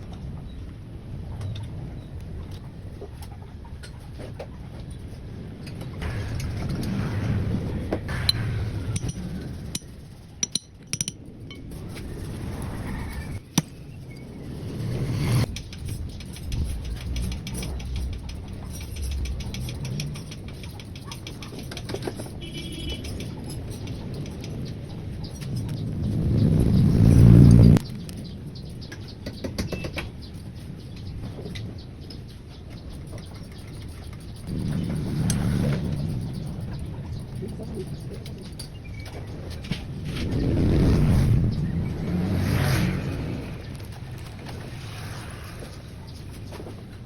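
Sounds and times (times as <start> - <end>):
low rumble: 5.9 - 10.4, 11.2 - 20.6, 24.0 - 28.6
metal parts clicking and rattling: 8.2 - 14.6, 15.4 - 26.4.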